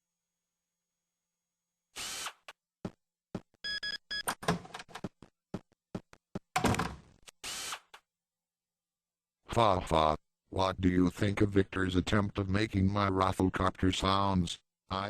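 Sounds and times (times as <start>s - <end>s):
short beeps: 3.6s - 4.3s.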